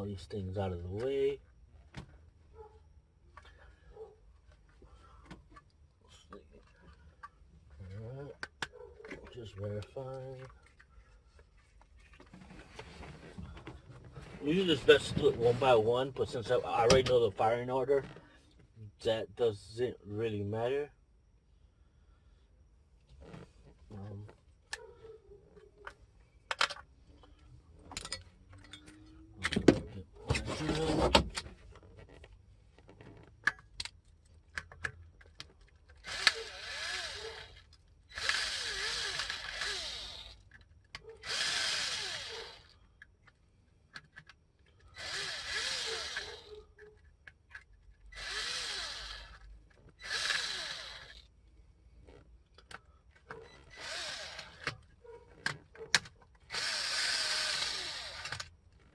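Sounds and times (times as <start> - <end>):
power drill spinning: 36.0 - 40.5, 41.2 - 42.8, 44.8 - 46.6, 48.1 - 51.3, 53.4 - 55.4, 56.4 - 58.9.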